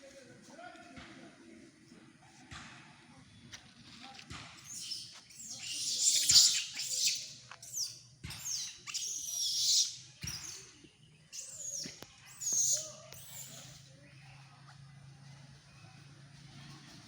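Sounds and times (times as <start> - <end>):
monkey squealing: 4.6 - 10.6, 11.3 - 13.7.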